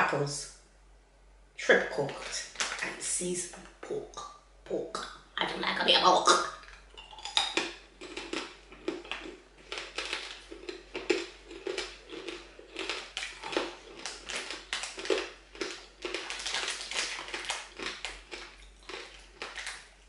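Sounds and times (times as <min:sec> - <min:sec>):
crackling being chewed: 0:06.6 - 0:20.0.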